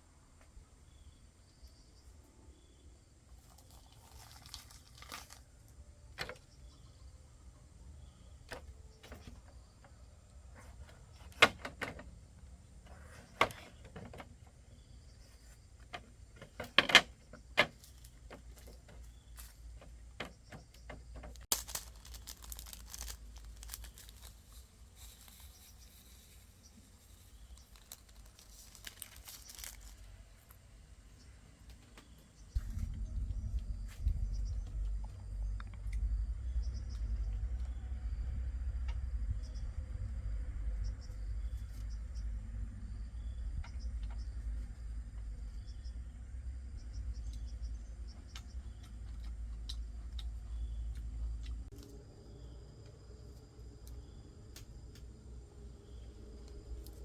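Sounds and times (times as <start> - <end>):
rustling and crinkling: 3.3 - 6.8, 8.0 - 37.8.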